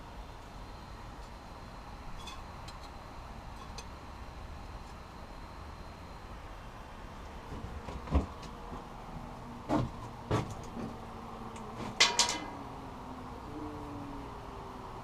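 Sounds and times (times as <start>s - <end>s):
steel parts and tools clanking: 11.9s - 12.6s.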